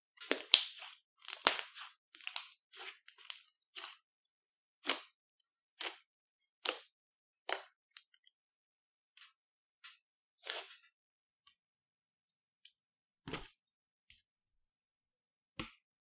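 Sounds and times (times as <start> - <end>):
slime squishing: 0.2 - 4.1, 4.8 - 6.9.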